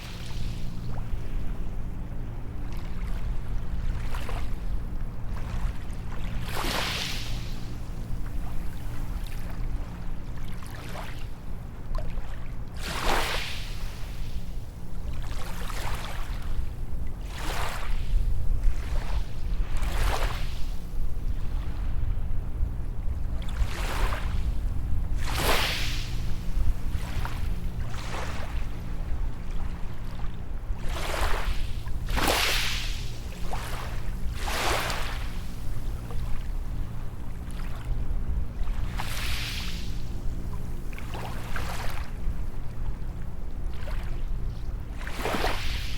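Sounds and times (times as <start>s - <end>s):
steady low rumble: 0.0s - 13.0s, 13.6s - 45.9s
waves washing up a beach: 5.4s - 11.2s, 12.2s - 14.5s, 17.2s - 22.0s, 25.1s - 37.9s, 38.6s - 42.3s, 43.7s - 45.9s
waves washing onto sand: 25.2s - 28.6s, 30.8s - 35.7s, 38.9s - 40.0s.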